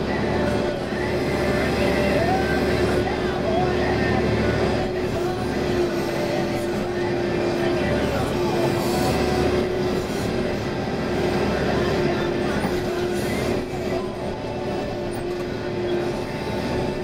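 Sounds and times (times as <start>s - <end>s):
diesel engine running: 0.0s - 17.0s
steady whine: 0.0s - 17.0s.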